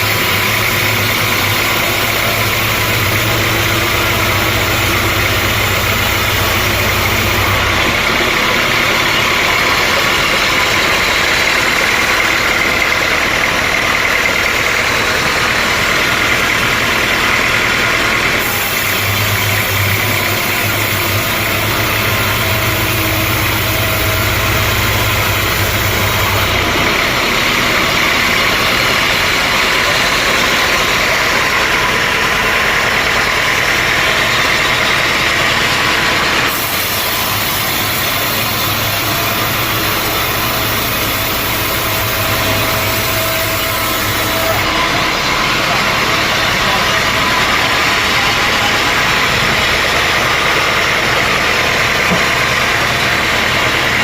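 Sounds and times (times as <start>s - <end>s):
sawmill machinery running: 0.0s - 54.0s
deep low hum: 16.4s - 30.4s.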